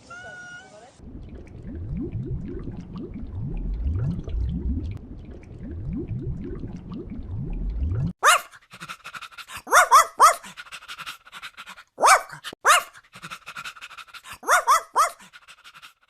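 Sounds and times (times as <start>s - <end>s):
small dog yapping: 8.2s - 8.6s, 9.6s - 10.5s, 12.0s - 13.0s, 14.3s - 15.3s.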